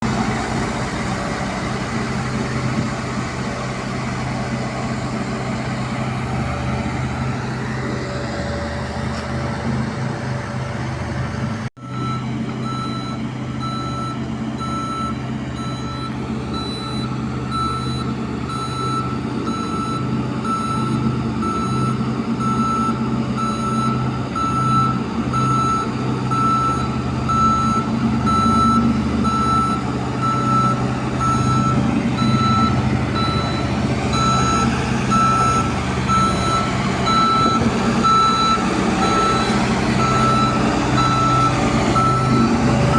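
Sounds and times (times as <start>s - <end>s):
heavy truck engine running: 0.0s - 42.9s
reversing alarm beeping: 11.8s - 42.9s.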